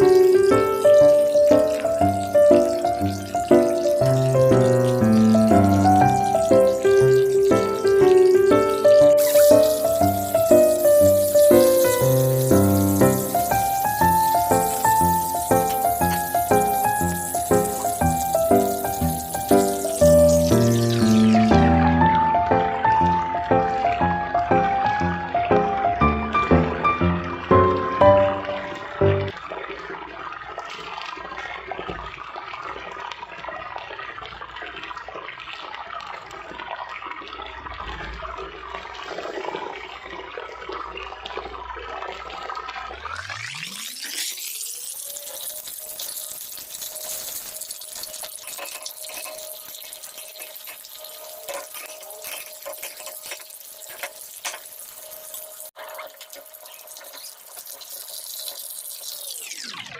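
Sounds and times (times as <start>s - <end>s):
chicken sizzling in a pan: 0.0s - 29.4s, 42.9s - 59.9s
water running from tap: 0.0s - 59.9s.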